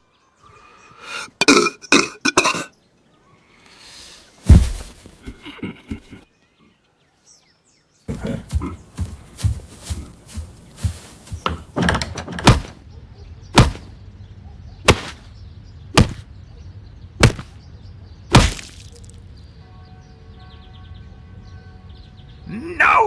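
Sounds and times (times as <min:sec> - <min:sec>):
hard whacks: 0:12.4 - 0:12.8, 0:13.6 - 0:13.9, 0:14.9 - 0:15.3, 0:16.0 - 0:16.2, 0:17.2 - 0:17.5, 0:18.3 - 0:19.1
knocks and clatter: 0:12.5 - 0:12.8.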